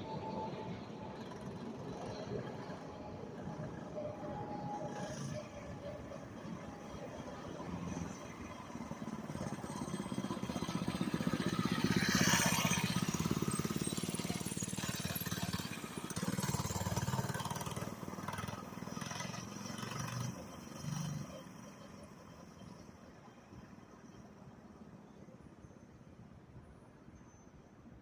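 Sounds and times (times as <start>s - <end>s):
small minibike engine running: 7.5s - 22.8s.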